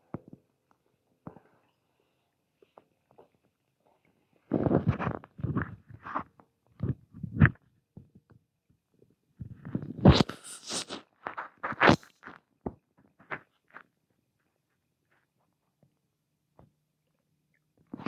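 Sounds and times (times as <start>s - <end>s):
stomach gurgling and rumbling: 4.4s - 8.3s, 9.4s - 13.9s.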